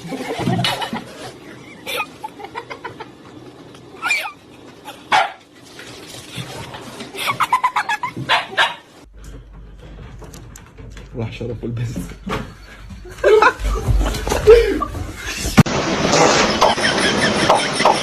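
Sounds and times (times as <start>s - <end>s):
dog barking: 5.1s - 5.4s, 8.3s - 8.9s.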